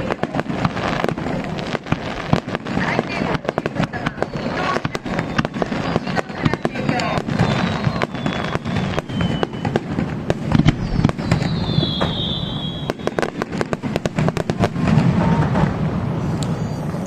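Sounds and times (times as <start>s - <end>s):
fireworks bangs and crackling: 0.0s - 17.0s
falling whistling tone: 4.0s - 6.2s, 7.4s - 9.8s, 10.6s - 13.3s, 16.2s - 17.0s.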